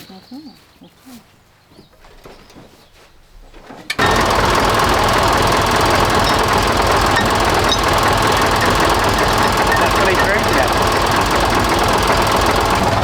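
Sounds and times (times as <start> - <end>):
machine chugging: 4.0 - 13.0.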